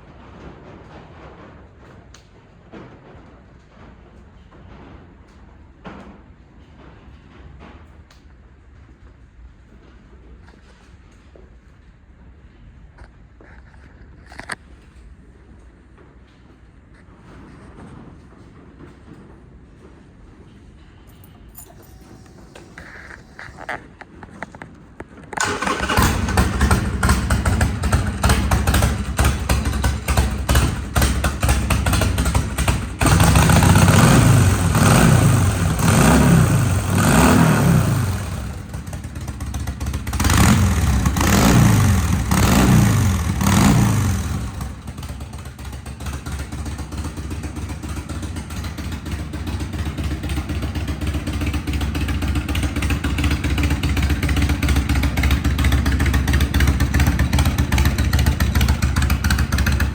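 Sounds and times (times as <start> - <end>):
motorcycle engine idling and revving: 21.1 - 59.9.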